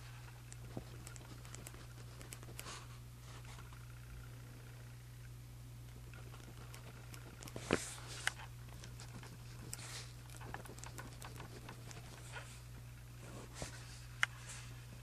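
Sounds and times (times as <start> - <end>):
sharp clicks: 5.9 - 12.2.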